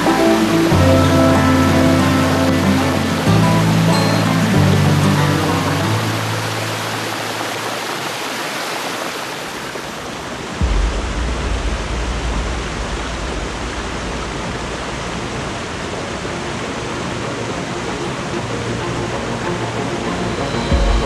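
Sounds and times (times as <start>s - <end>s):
stream water rushing: 0.0s - 21.0s
heavy low rumble: 10.6s - 21.0s.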